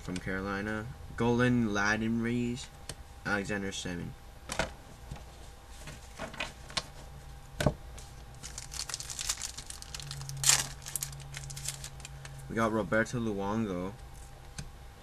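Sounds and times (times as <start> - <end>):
card wrapper crinkling and tearing: 8.2 - 12.4.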